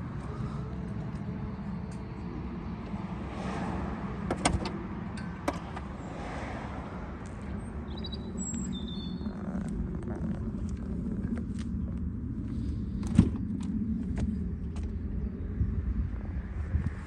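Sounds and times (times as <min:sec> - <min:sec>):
car engine idling: 0:07.0 - 0:14.9
high bird chirps: 0:07.8 - 0:09.4.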